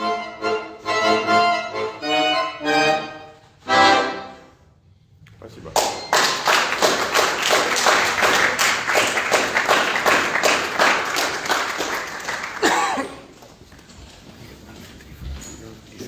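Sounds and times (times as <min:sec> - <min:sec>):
hands clapping: 0:05.3 - 0:13.8.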